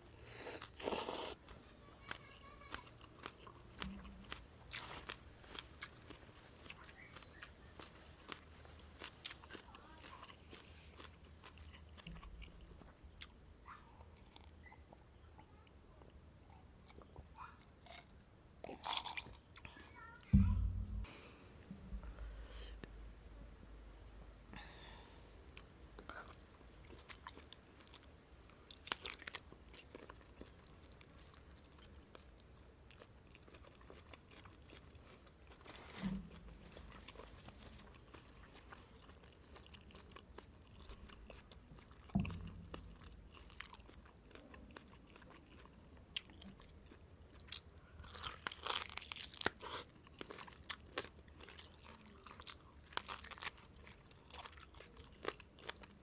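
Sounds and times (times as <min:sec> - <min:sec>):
person chewing food: 0:00.0 - 0:13.4, 0:16.8 - 0:19.7, 0:25.4 - 0:56.0
low knocks: 0:20.4 - 0:21.1, 0:21.7 - 0:22.4, 0:42.2 - 0:43.1.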